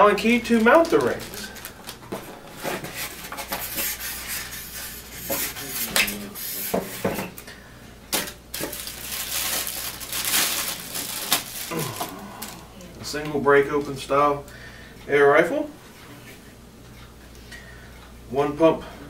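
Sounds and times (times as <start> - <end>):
packaging rustling: 0.1 - 3.6, 8.2 - 12.6.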